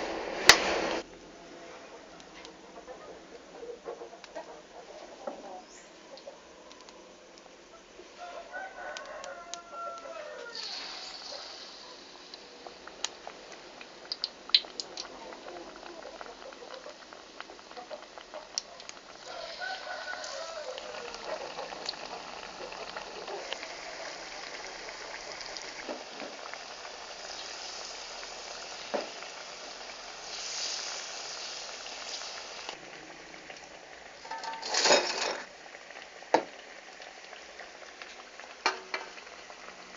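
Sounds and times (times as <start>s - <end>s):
banana fritters sizzling in oil: 0.0s - 39.9s
rooster crowing: 8.1s - 11.0s, 19.2s - 24.4s.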